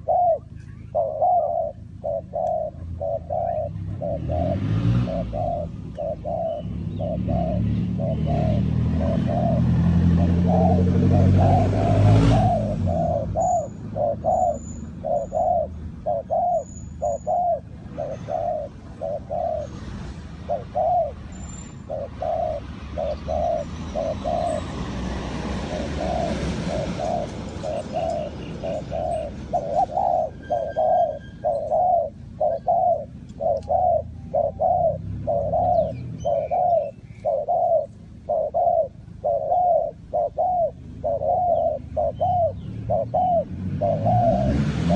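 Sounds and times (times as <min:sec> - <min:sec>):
dove cooing: 0:00.0 - 0:44.9
small birds chirping: 0:00.0 - 0:44.9.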